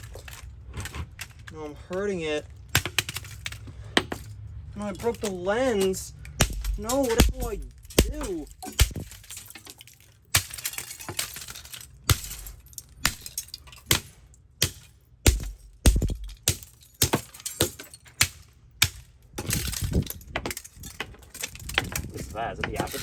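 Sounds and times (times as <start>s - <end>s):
broken pieces clinking: 0.0s - 1.6s, 2.4s - 23.0s
casing cracking: 5.0s - 9.1s
hard blows smashing camera: 5.2s - 22.2s.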